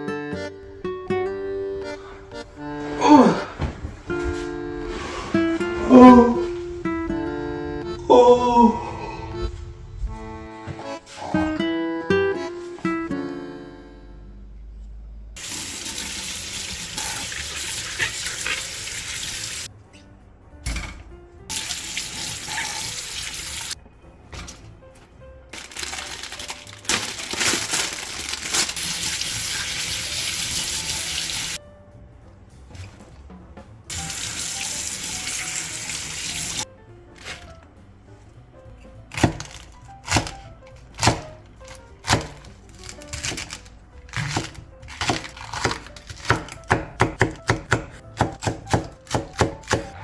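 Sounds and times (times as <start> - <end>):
kitchen tap running into sink: 15.4 - 19.7, 21.5 - 23.8, 28.5 - 31.6, 33.9 - 36.6.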